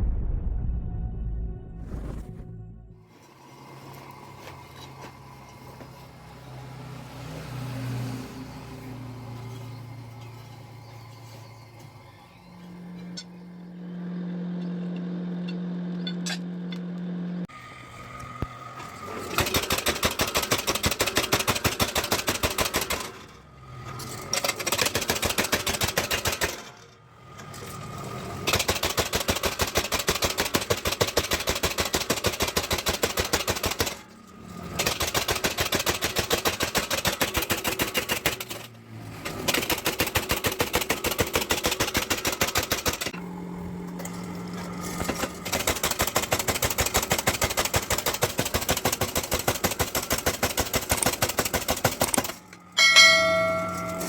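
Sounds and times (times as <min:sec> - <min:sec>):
power hammer striking steel: 0:18.9 - 0:23.3, 0:24.3 - 0:26.8, 0:28.4 - 0:38.7, 0:45.0 - 0:54.0.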